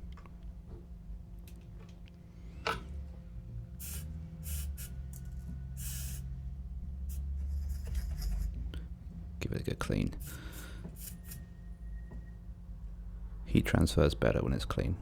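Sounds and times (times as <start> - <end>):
steady low hum: 0.0 - 15.0
short scraping hisses: 3.8 - 6.3, 10.2 - 11.6.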